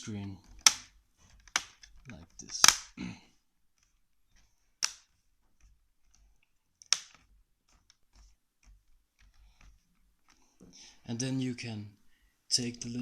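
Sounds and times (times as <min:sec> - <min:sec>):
plastic clips snapping into place: 0:00.5 - 0:03.0, 0:04.8 - 0:05.1, 0:06.8 - 0:07.3.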